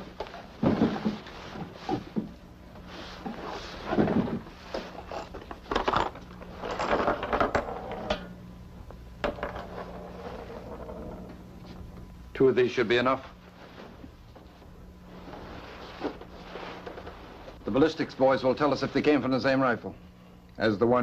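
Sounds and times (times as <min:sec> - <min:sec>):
low hum: 0:02.3 - 0:20.6.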